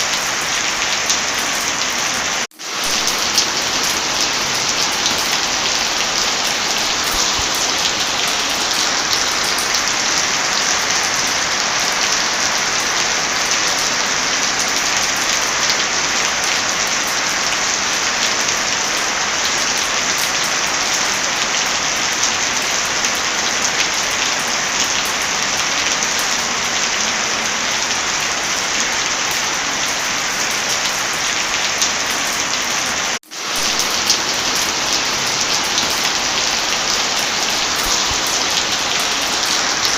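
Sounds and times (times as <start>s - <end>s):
heavy rain: 0.0s - 39.9s.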